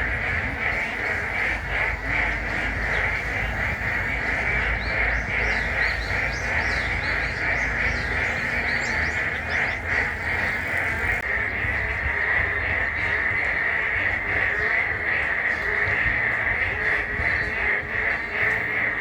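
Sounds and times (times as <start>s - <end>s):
bird chirps: 0.0s - 11.2s
chorus of frogs trilling: 0.0s - 19.0s.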